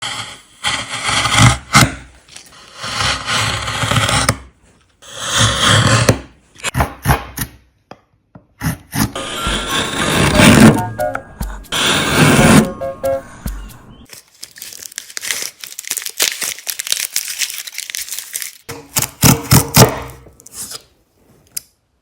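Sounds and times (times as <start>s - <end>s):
carving tool scraping wood: 0.0s - 7.5s, 8.6s - 10.8s, 11.7s - 12.7s.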